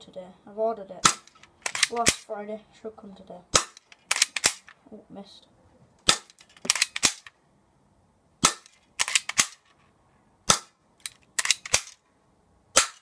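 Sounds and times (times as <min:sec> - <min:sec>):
airsoft pistol firing: 0:01.0 - 0:02.2, 0:03.5 - 0:04.7, 0:06.0 - 0:07.3, 0:08.4 - 0:09.6, 0:10.5 - 0:10.8, 0:12.7 - 0:13.0.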